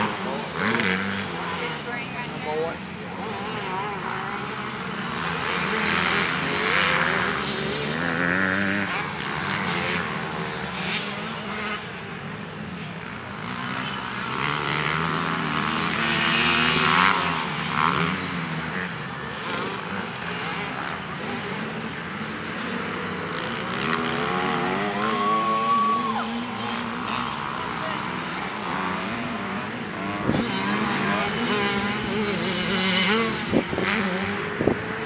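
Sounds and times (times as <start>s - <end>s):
dirt bike engines revving: 0.0s - 35.0s.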